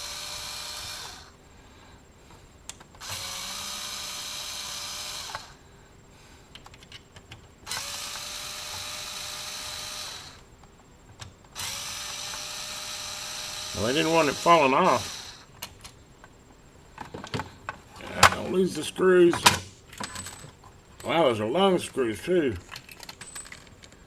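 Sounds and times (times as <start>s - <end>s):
electric screwdriver whining: 0.0s - 1.3s, 3.0s - 5.6s, 7.7s - 10.4s, 11.6s - 15.5s.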